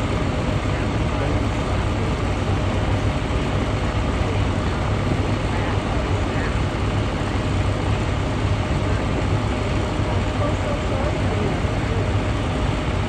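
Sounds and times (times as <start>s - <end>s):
faint voices: 3.8s - 13.0s.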